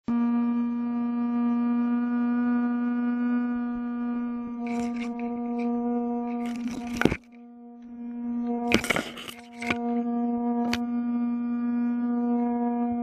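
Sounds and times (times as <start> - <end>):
electric fan humming: 1.9 - 7.3.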